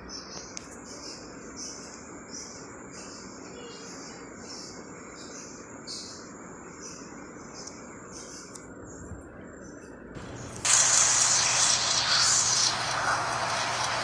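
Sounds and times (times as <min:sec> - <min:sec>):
steady hiss: 0:10.2 - 0:14.0.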